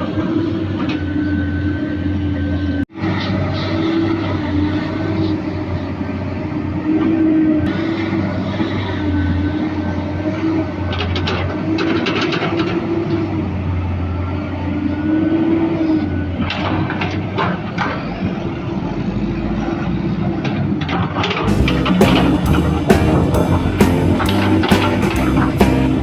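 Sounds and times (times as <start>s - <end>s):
excavator diesel engine whining: 0.0s - 26.0s
clattering: 20.9s - 26.0s.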